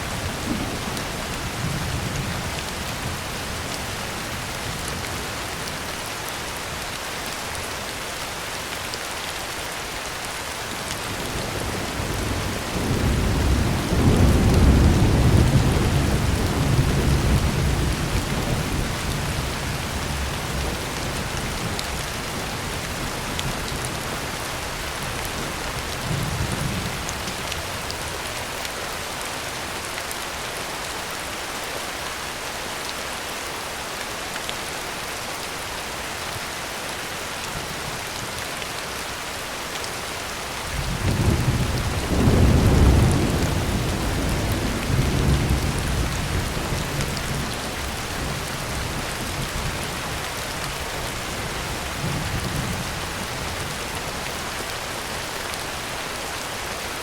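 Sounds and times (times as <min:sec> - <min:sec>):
heavy rain on a tin roof: 0:00.0 - 0:57.0
thunder rumbling: 0:11.4 - 0:20.9, 0:40.8 - 0:49.7.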